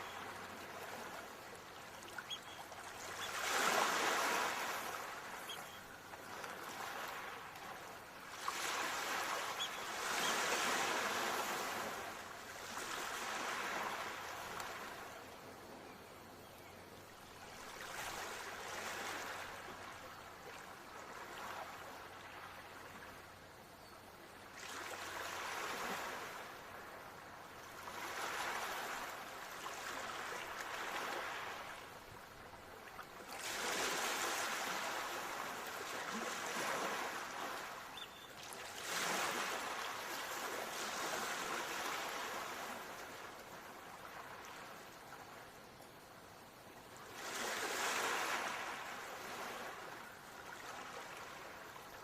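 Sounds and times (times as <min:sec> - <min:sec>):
ocean waves washing onto shore: 0:00.0 - 0:15.2, 0:24.6 - 0:45.3.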